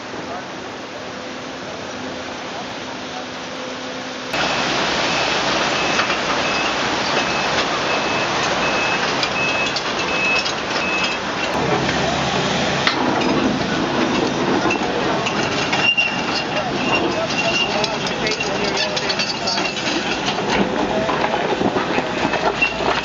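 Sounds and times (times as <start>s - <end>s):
heavy construction machinery running: 0.0s - 23.0s
reversing alarm beeping: 4.4s - 11.6s.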